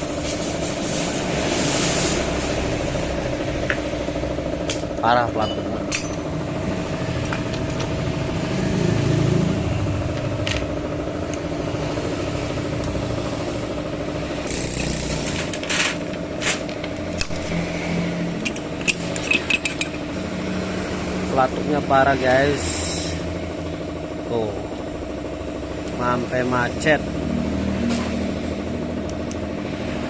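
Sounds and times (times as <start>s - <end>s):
engine running: 0.0s - 30.0s
metallic clicks of parts handled: 4.6s - 6.3s, 10.1s - 11.5s, 14.5s - 17.6s, 18.4s - 20.1s.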